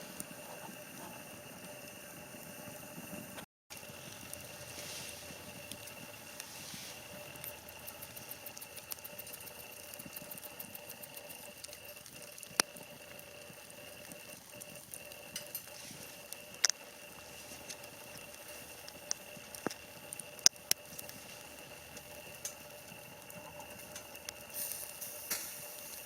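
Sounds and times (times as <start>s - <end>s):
campfire crackling: 0.0s - 26.0s
fire sharp pops: 14.0s - 26.0s.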